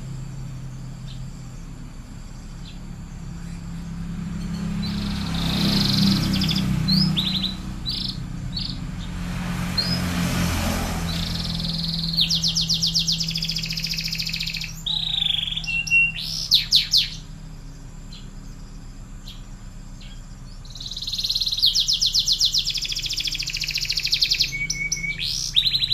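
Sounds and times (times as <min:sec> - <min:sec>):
low hum: 0:00.0 - 0:21.6
canary singing and trilling: 0:00.2 - 0:25.9.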